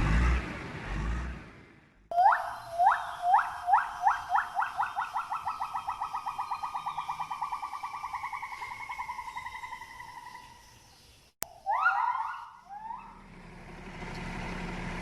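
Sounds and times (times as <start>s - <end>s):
gibbon whooping call: 2.1s - 9.9s, 11.5s - 13.2s.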